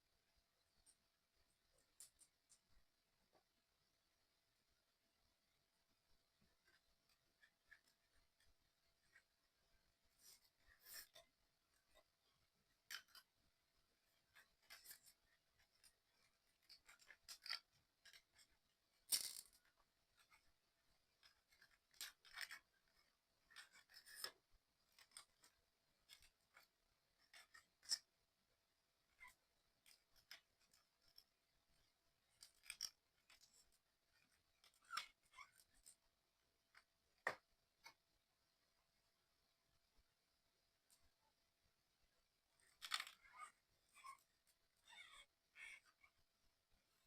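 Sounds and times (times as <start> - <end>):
small plastic parts clicking: 10.2 - 13.4, 14.0 - 28.2, 29.0 - 36.1, 42.5 - 46.2.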